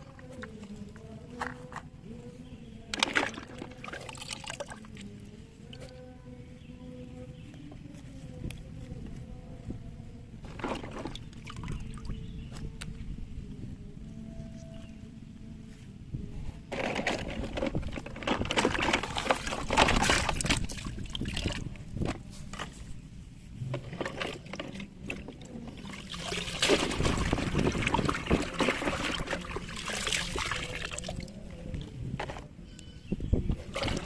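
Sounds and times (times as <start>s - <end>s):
water splashing on plastic toys: 2.9s - 5.0s, 16.8s - 21.7s, 23.8s - 31.4s.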